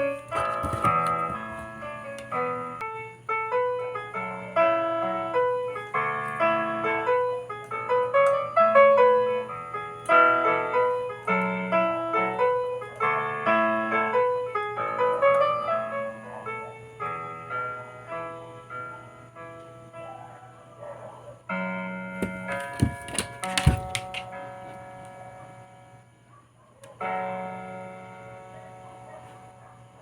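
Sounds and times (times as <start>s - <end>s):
piano music: 0.0s - 20.3s.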